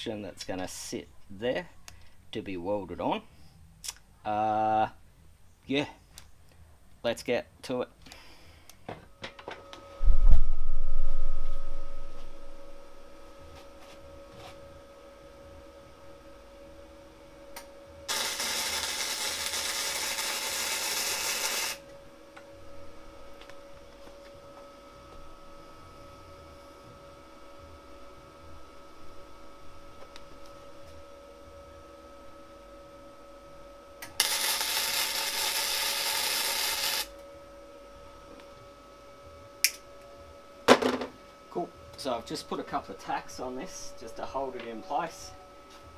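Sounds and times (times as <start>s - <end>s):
welder arc buzzing: 9.3s - 44.5s
welder arc crackling: 17.6s - 21.9s, 34.0s - 37.2s.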